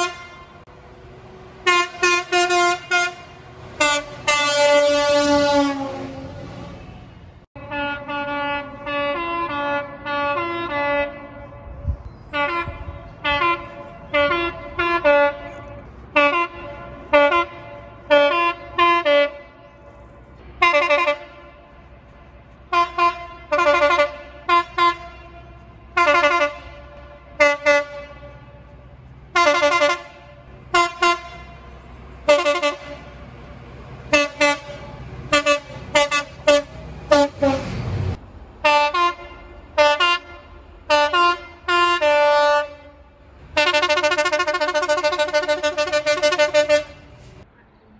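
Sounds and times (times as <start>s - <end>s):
air horn blasts: 0.0s - 0.7s, 1.6s - 6.9s, 7.6s - 33.2s, 34.1s - 37.8s, 38.6s - 47.4s
loud rushing burst of noise: 34.8s - 38.6s.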